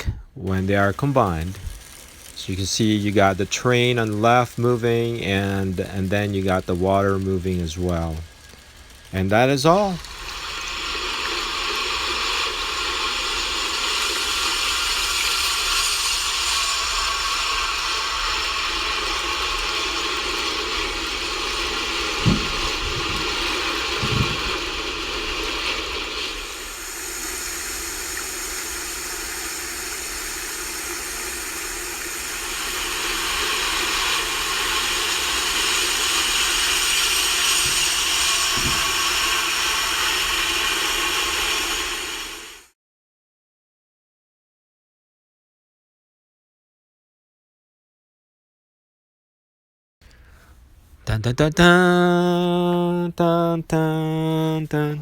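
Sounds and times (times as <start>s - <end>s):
model train motor hum: 0.0s - 42.7s
track rattle and hiss: 0.0s - 42.7s
soft knocks: 22.2s - 24.6s.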